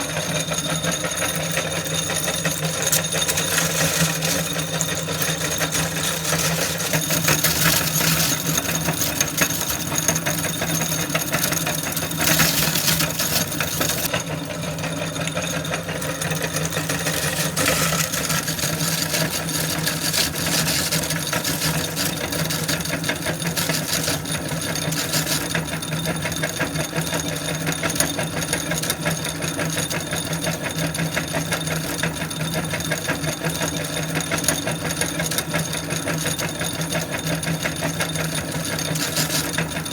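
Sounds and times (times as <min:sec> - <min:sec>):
meat grinder motor hum: 0:00.0 - 0:39.9
chips crunching: 0:05.7 - 0:14.1, 0:17.0 - 0:22.1.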